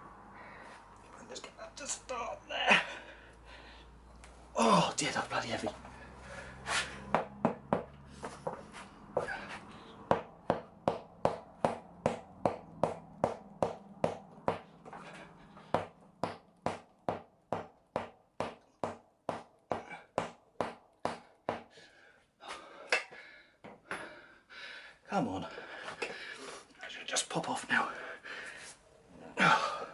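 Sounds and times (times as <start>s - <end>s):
steady sharp knocks: 7.0s - 9.4s, 10.0s - 21.8s.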